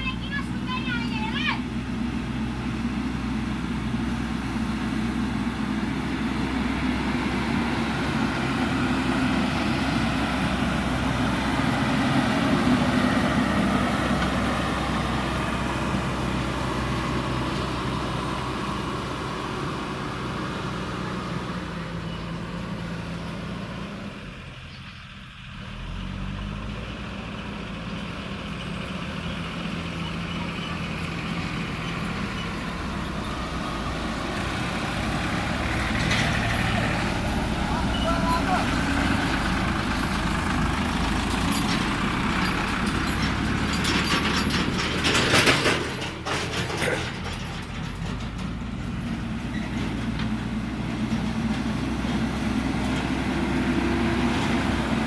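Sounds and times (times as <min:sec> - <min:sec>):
diesel engine running under load: 0:00.0 - 0:55.0.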